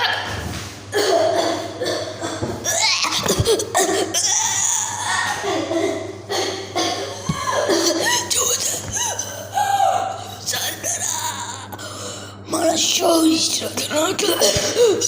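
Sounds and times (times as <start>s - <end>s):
people laughing: 7.2s - 10.2s.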